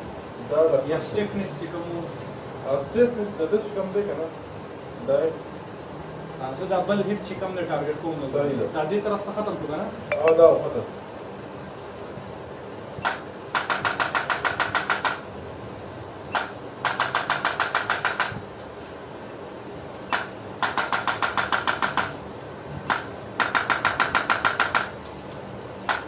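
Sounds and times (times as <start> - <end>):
adjusting gun rapid clicks: 13.0 - 15.2, 16.3 - 18.4, 20.1 - 22.2, 22.9 - 24.9.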